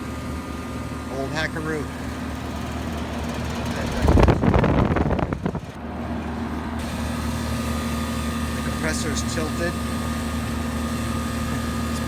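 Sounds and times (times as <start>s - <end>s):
heat pump humming: 0.0s - 12.0s
rumbling rushing burst: 3.6s - 5.8s.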